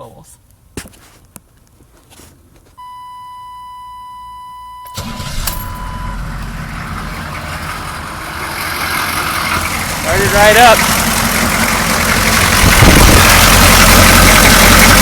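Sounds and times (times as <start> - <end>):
diesel engine cranking and running: 5.0 - 15.0.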